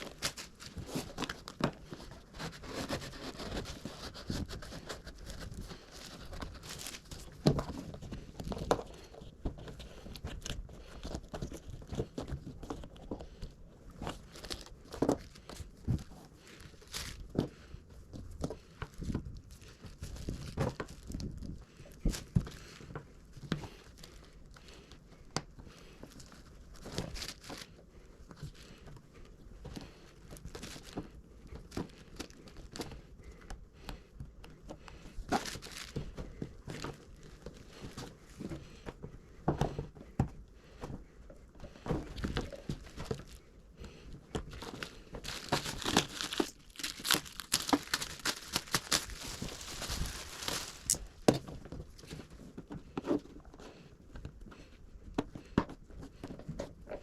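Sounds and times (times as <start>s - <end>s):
tape tearing and crumpling: 0.0s - 8.7s, 14.1s - 17.3s, 26.8s - 27.8s, 35.3s - 36.1s, 44.5s - 51.2s.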